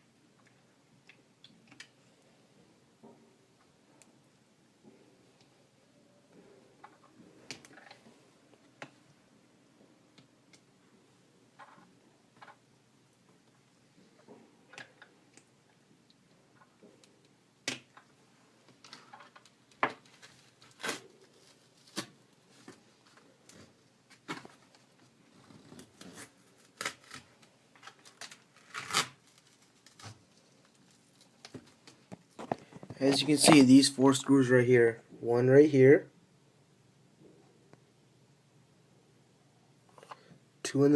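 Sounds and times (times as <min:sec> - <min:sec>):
adhesive strip being pried and peeled: 0:26.7 - 0:27.3, 0:28.0 - 0:30.2.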